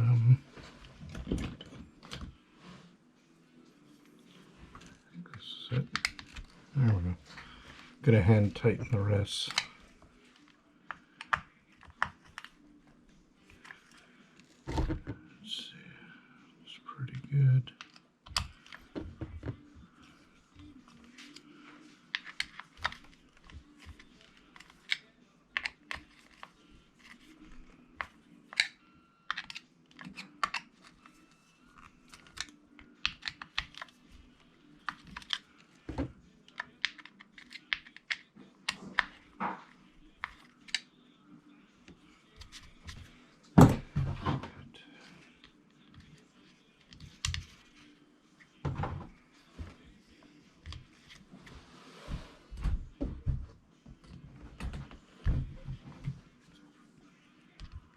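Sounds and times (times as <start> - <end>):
plastic and metal parts clicking: 28.0 - 31.2, 34.8 - 35.5, 36.5 - 39.2.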